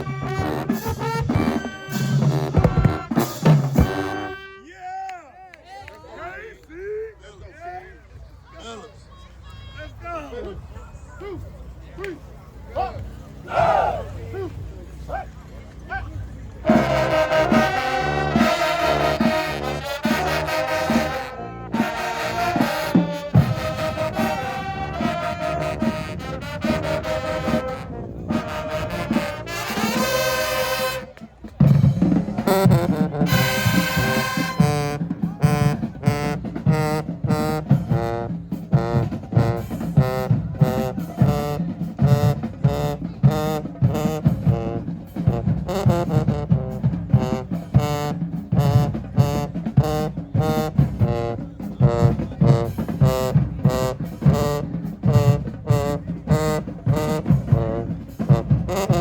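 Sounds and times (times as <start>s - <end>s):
drums on a steady beat: 0.0s - 4.4s, 16.6s - 59.0s
marching band playing: 0.0s - 4.8s, 11.2s - 59.0s.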